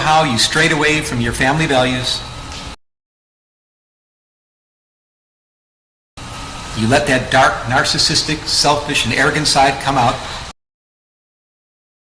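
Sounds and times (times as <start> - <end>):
man's voice: 0.0 - 2.2, 6.8 - 10.3.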